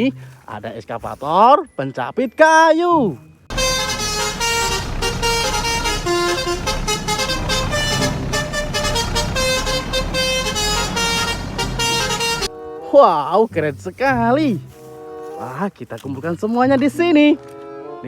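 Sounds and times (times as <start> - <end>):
horn tune over a steady beat: 3.5 - 15.6, 17.4 - 18.0.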